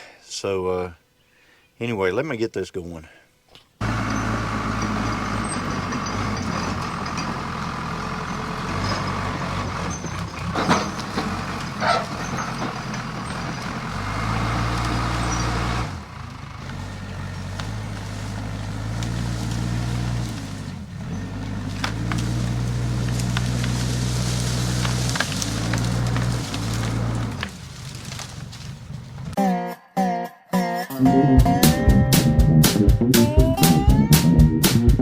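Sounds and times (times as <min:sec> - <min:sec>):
dozer diesel engine running: 0:03.8 - 0:29.4.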